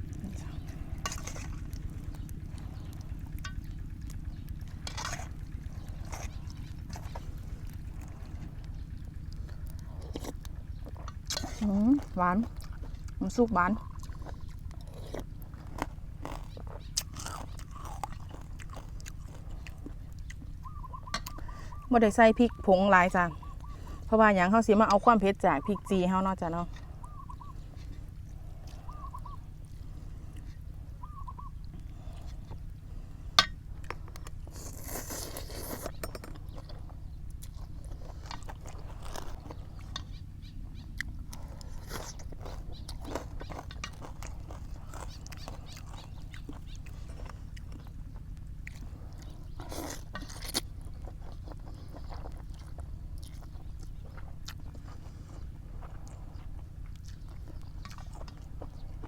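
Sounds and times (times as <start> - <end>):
chewing: 0.0 - 59.0
steady low hum: 0.0 - 59.0
slurping noodle soup: 34.4 - 36.3.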